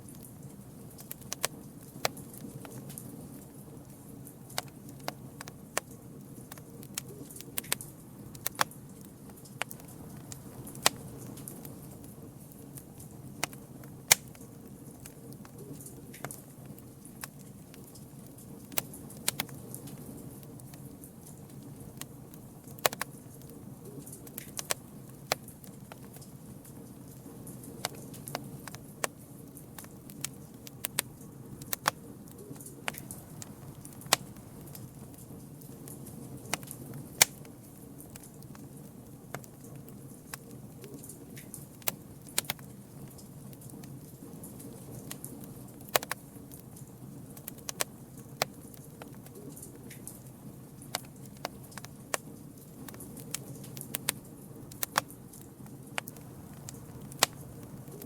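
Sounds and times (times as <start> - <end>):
campfire crackling: 0.0 - 58.0.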